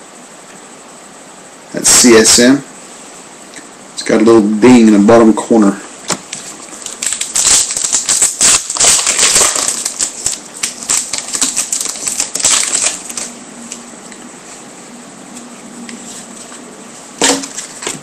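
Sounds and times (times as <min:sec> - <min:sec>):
foil wrapper crinkling: 0:06.3 - 0:13.9.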